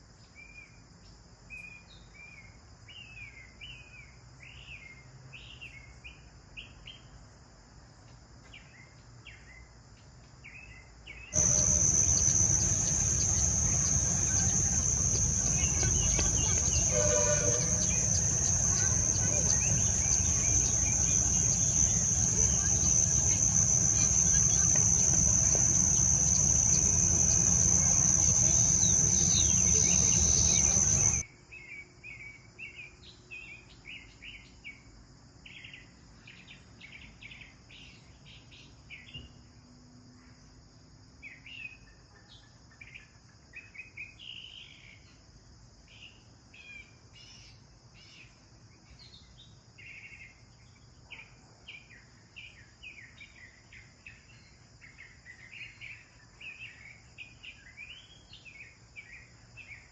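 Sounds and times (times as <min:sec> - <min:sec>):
insect drone: 0:00.0 - 0:59.9
sparrows chirping: 0:11.2 - 0:31.2
loud rush of noise with whine: 0:11.4 - 0:31.2.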